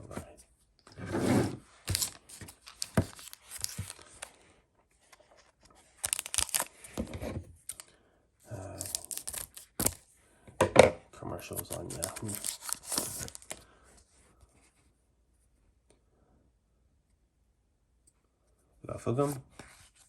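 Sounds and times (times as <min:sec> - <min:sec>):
foil wrapper tearing and crinkling: 0:01.9 - 0:04.3, 0:05.9 - 0:06.9, 0:08.7 - 0:10.0, 0:11.5 - 0:13.6.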